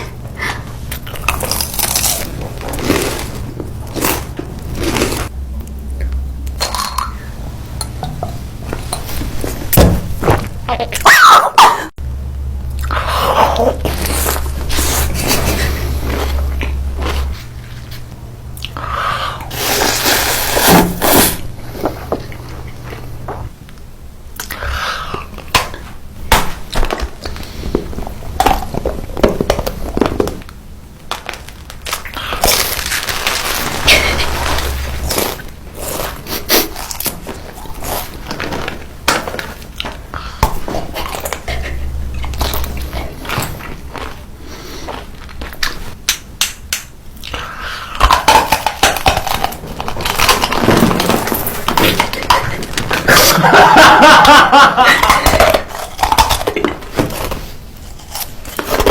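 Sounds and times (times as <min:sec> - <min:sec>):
biting and chewing: 0:00.0 - 0:05.3, 0:47.2 - 0:53.5, 0:54.8 - 0:58.9
crunching and chewing crisp food: 0:00.0 - 0:07.2, 0:12.6 - 0:25.9, 0:26.8 - 0:46.0, 0:47.1 - 0:58.9
steady low hum: 0:00.0 - 0:11.1, 0:11.8 - 0:58.9.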